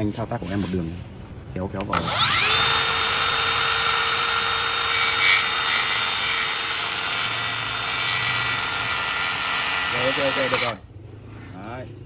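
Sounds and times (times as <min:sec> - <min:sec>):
circular saw cutting wood: 0:01.9 - 0:10.8.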